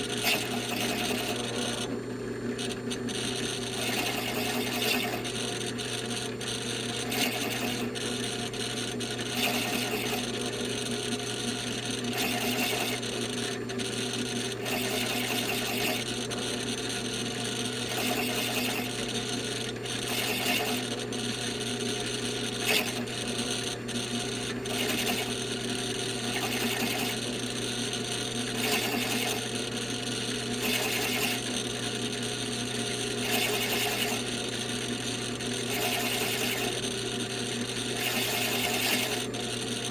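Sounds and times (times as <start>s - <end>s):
cutter scraping wood: 0.0s - 2.0s, 2.6s - 10.6s, 33.1s - 34.6s, 35.6s - 37.0s, 37.8s - 39.9s.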